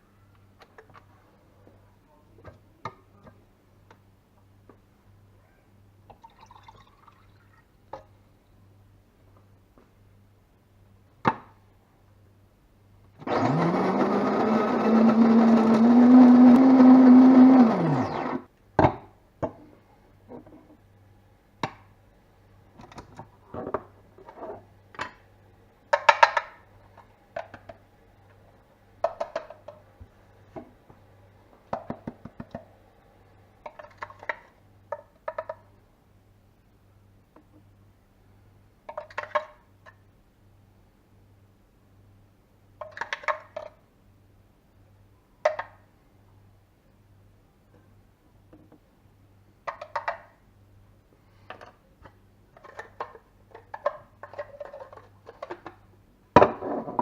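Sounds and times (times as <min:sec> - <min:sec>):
electric coffee grinder motor: 0:13.2 - 0:18.4.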